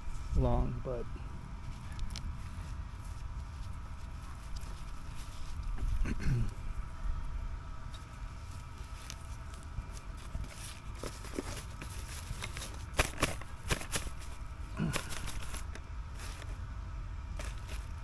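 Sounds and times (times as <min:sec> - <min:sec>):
steady low rumble: 0:00.0 - 0:18.0
objects being handled: 0:07.9 - 0:16.6, 0:17.4 - 0:18.0.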